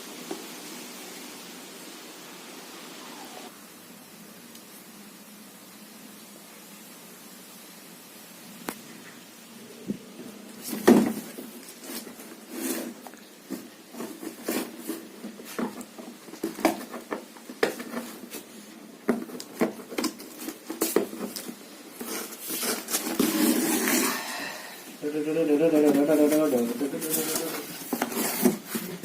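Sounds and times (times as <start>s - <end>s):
packaging rustling: 10.6s - 25.0s, 25.6s - 29.0s.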